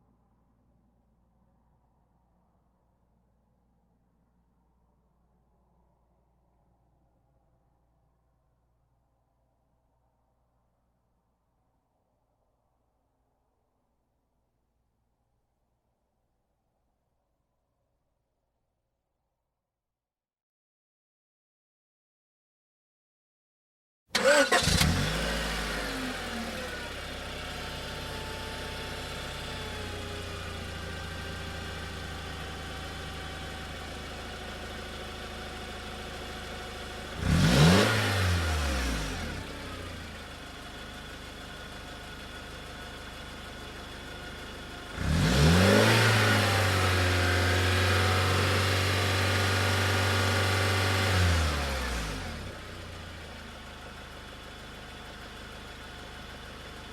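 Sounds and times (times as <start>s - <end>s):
car engine idling and revving: 24.2s - 56.9s.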